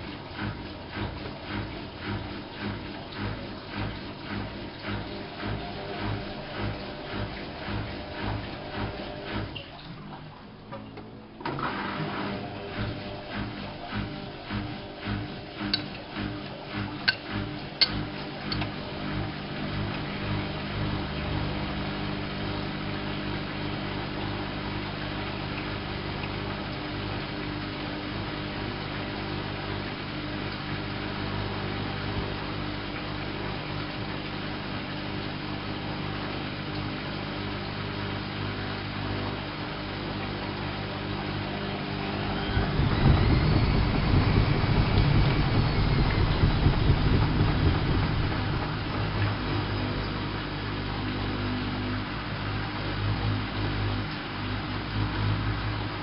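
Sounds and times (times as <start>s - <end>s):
drum spinning whine: 0.0s - 9.6s, 11.4s - 56.0s
washing machine motor hum: 0.0s - 56.0s
washing machine clicks: 12.6s - 19.3s.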